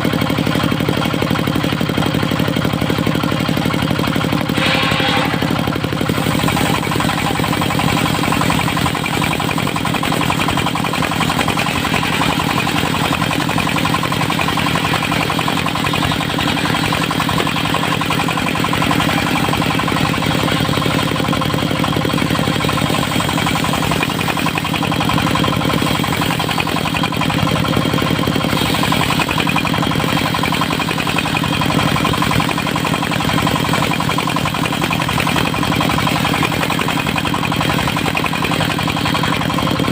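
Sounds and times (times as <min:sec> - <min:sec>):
sawmill engine running: 0:00.0 - 0:39.9
bright high-pitched sound: 0:04.6 - 0:07.6.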